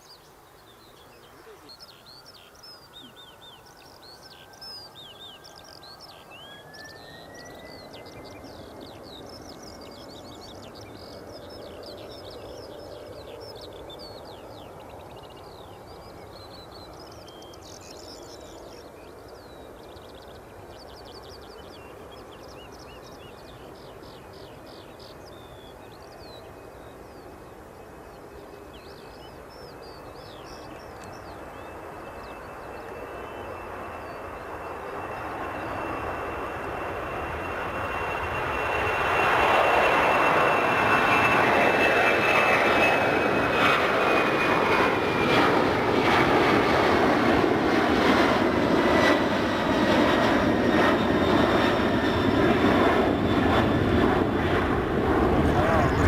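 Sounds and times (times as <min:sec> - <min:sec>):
songbirds chirping and trilling: 0:00.0 - 0:36.1
jet airliner rumble and whine: 0:00.2 - 0:56.0.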